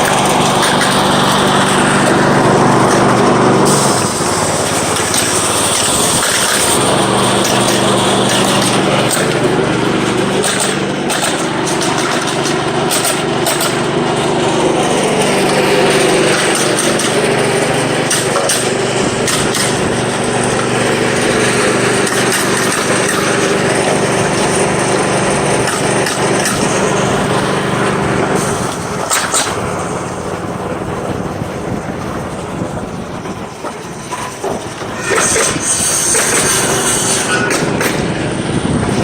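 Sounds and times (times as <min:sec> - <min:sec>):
small engine running: 0:00.0 - 0:39.0
sharp clicks or knocks: 0:10.3 - 0:13.9, 0:28.4 - 0:29.6.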